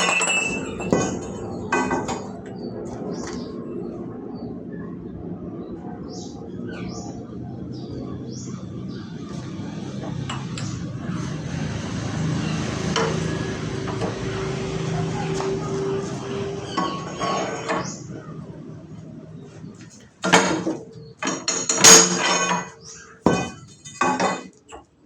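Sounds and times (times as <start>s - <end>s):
metal knocks and clinks: 0.0s - 2.3s, 20.2s - 24.5s
steady ringing tone: 0.0s - 3.2s
steady hum: 0.0s - 24.2s.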